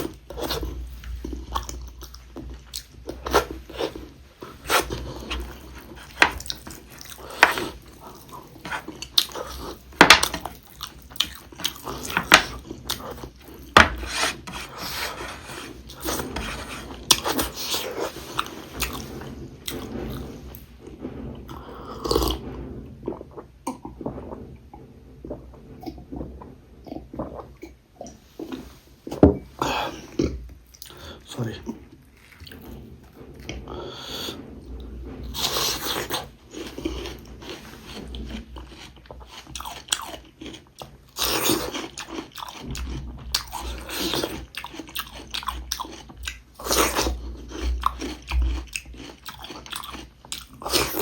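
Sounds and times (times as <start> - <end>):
chewing and mouth smacking: 38.7 - 51.0.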